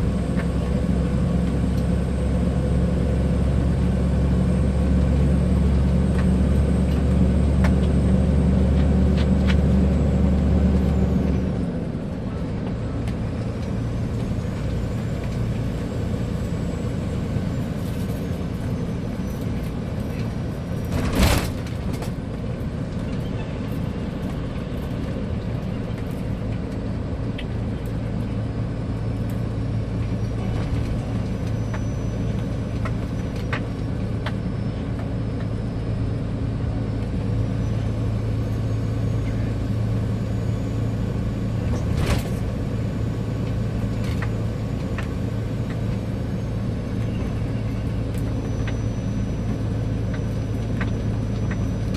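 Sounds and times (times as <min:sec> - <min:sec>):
diesel truck engine droning: 0:00.0 - 0:51.9.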